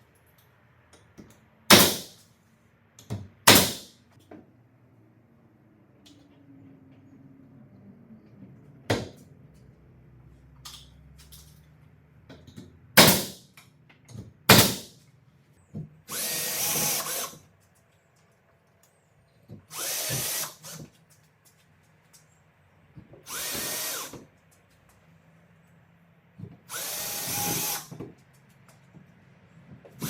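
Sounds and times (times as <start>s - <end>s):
power drill running: 16.1s - 17.4s, 19.7s - 20.8s, 23.3s - 24.1s, 26.7s - 27.9s.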